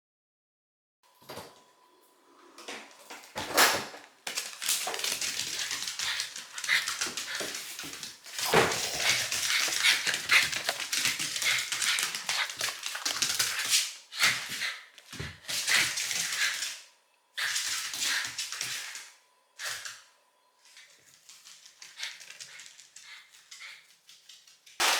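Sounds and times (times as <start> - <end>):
dog crunching food: 4.3 - 13.8.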